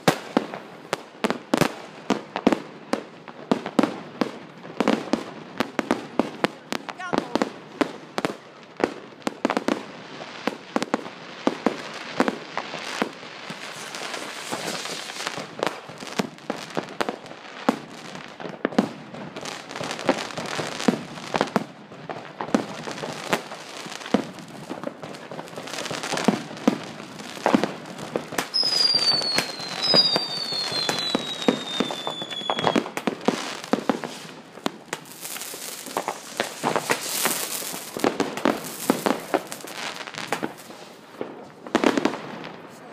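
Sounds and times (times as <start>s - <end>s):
firecrackers banging: 10.5s - 16.9s, 17.7s - 42.9s
hissing crackle: 12.8s - 16.1s, 22.8s - 41.2s
falling firework whistles: 13.4s - 15.5s, 25.6s - 41.2s.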